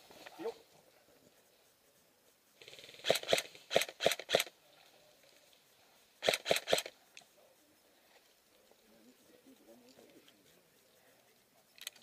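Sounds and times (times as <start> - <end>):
airsoft gun shots: 6.2 - 6.9.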